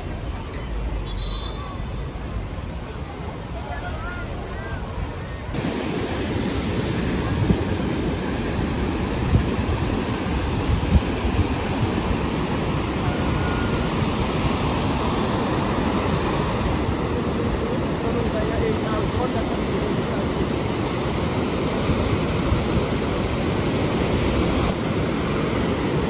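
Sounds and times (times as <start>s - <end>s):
wind: 0.0s - 26.0s
ocean surf rushing: 5.5s - 26.0s
wind buffeting microphone: 5.5s - 26.0s.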